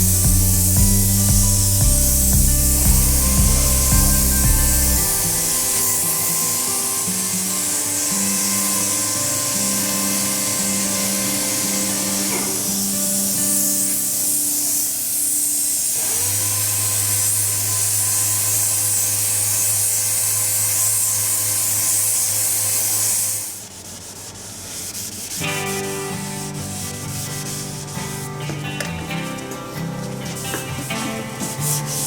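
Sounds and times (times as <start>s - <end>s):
background music: 0.0s - 12.7s
sanding car body panel: 0.0s - 28.6s, 29.9s - 32.0s.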